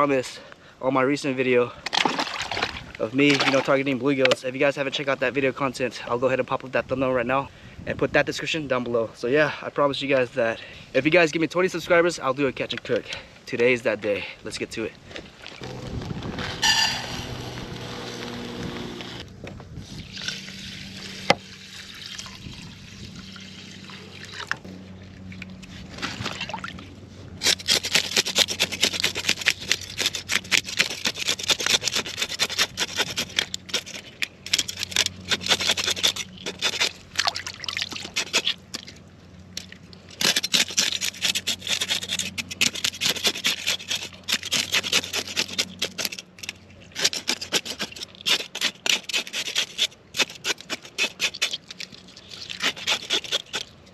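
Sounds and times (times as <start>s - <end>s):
knife scraping fish scales: 16.5s - 18.5s, 27.4s - 37.0s, 37.8s - 39.0s, 40.2s - 53.7s.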